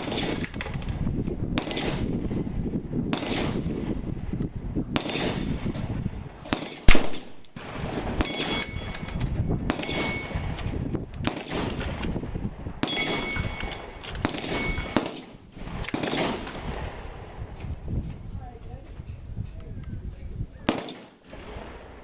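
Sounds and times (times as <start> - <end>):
sharp cracks and clicks: 0.0 - 1.0, 10.5 - 12.2
rifle shot: 0.0 - 4.1, 4.9 - 16.8, 20.7 - 21.9
metallic ringing tones: 8.2 - 10.5, 12.8 - 15.0.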